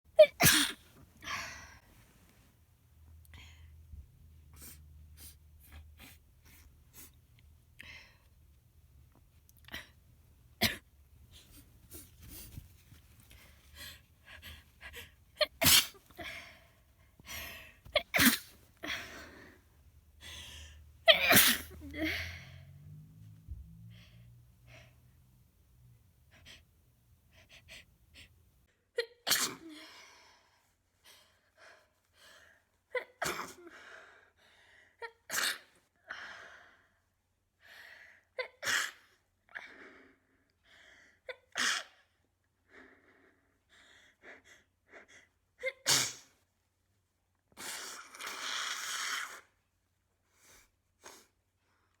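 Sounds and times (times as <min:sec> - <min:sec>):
person sneezing: 0:00.2 - 0:01.4, 0:15.4 - 0:16.4, 0:17.9 - 0:19.3, 0:21.1 - 0:22.4, 0:29.3 - 0:29.8, 0:45.8 - 0:46.3
person blowing nose: 0:15.5 - 0:16.1, 0:45.9 - 0:46.4, 0:47.6 - 0:49.5.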